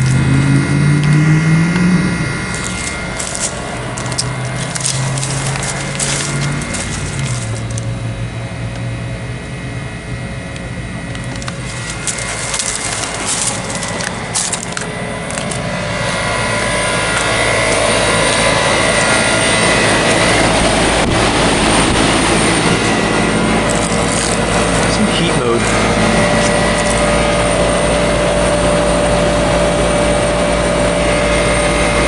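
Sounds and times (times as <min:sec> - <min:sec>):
compressor hum with whine: 0:00.0 - 0:32.0
condenser fan rushing: 0:00.0 - 0:32.0
crunching clicks: 0:02.5 - 0:07.9, 0:10.6 - 0:15.7, 0:17.1 - 0:19.2, 0:23.6 - 0:25.0, 0:25.7 - 0:27.1.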